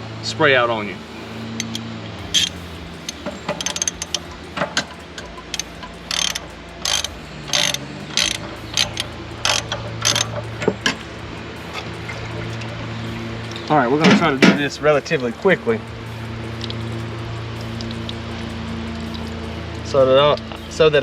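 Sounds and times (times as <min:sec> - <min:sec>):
socket ratchet clicking: 0:01.6 - 0:11.9.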